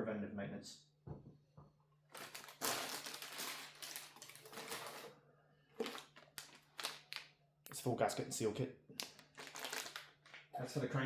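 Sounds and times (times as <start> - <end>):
packaging rustling and crinkling: 2.1 - 5.1, 5.8 - 7.3, 9.0 - 10.5.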